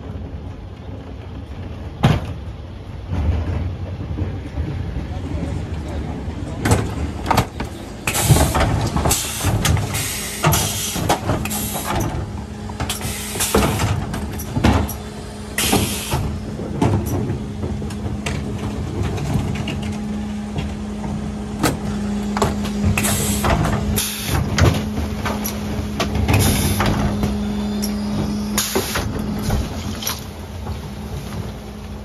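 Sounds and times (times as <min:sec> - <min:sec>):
truck engine humming: 0:04.2 - 0:32.0
clanks and knocks: 0:06.5 - 0:31.4
hissing air bursts: 0:08.0 - 0:12.0, 0:12.8 - 0:14.0, 0:15.2 - 0:16.4, 0:22.9 - 0:24.5, 0:26.3 - 0:29.1.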